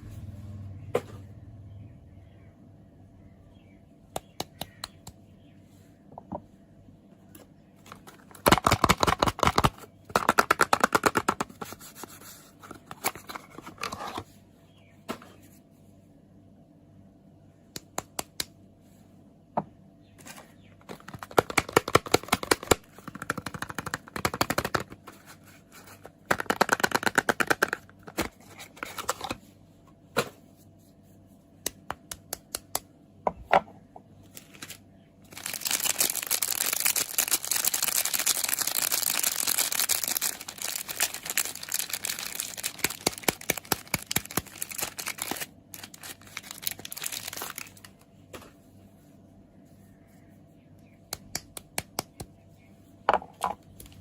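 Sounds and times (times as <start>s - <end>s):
wrapper crinkling and tearing: 8.0s - 11.2s, 34.4s - 48.0s.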